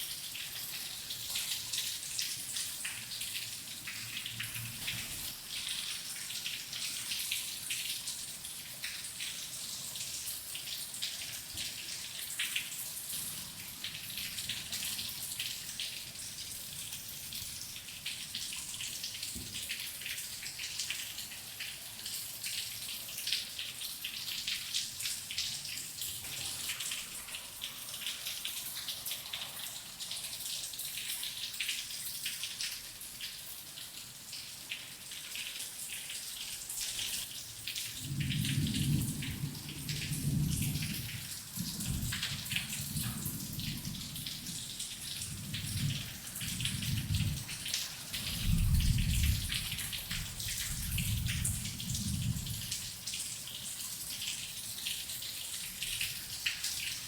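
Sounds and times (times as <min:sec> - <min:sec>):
rain pattering: 0:00.0 - 0:57.0
low thunder rumbling: 0:38.0 - 0:44.1, 0:48.2 - 0:52.6.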